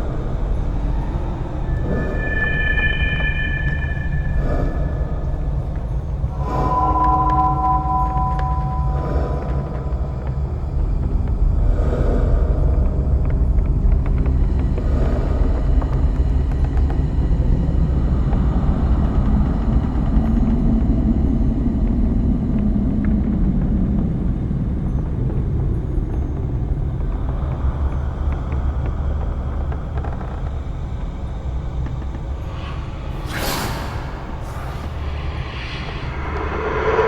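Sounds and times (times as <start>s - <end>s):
low moaning swell: 0.0s - 11.8s, 32.5s - 37.0s
deep rumbling drone: 0.0s - 37.0s.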